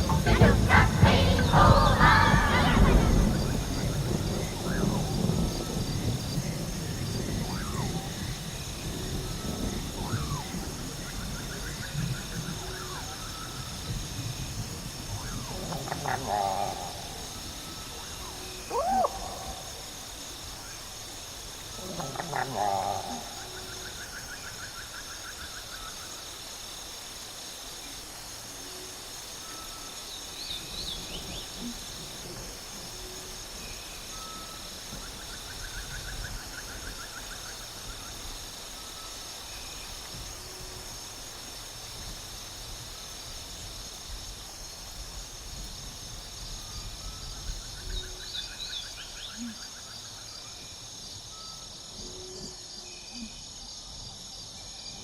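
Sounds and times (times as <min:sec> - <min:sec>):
trilled call: 0:00.0 - 0:03.7
low rumble: 0:00.0 - 0:06.8
high insect drone: 0:00.0 - 0:55.0.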